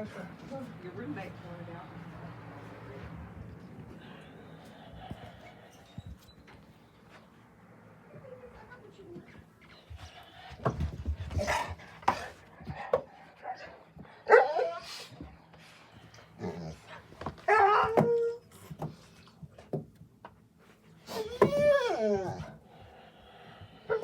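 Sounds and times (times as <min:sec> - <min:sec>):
pet crying: 0:21.1 - 0:22.6.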